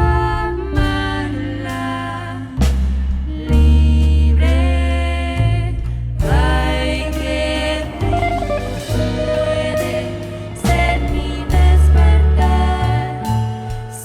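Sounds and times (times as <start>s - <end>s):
jazz-pop band with singing: 0.0s - 14.0s.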